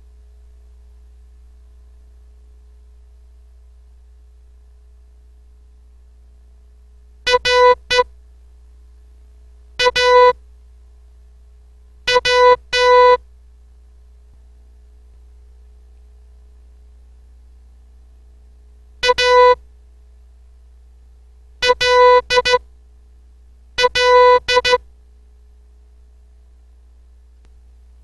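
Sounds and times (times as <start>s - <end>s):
morse code beeps: 7.3s - 8.0s, 9.8s - 10.4s, 12.1s - 13.2s, 19.0s - 19.6s, 21.6s - 22.6s, 23.8s - 24.8s.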